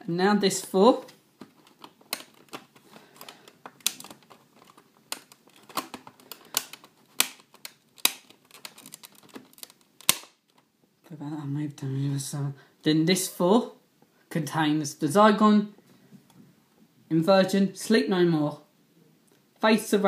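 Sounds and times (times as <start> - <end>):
plastic disc case clicks: 1.1 - 10.6
plastic snap: 1.1 - 10.7.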